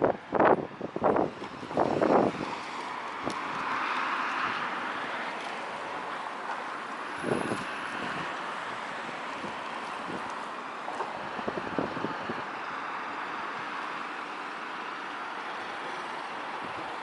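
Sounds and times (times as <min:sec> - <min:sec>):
wind gusts buffeting microphone: 0:00.0 - 0:04.8, 0:07.1 - 0:10.4, 0:11.0 - 0:12.6
rushing wind hiss: 0:00.0 - 0:05.2, 0:07.0 - 0:13.6.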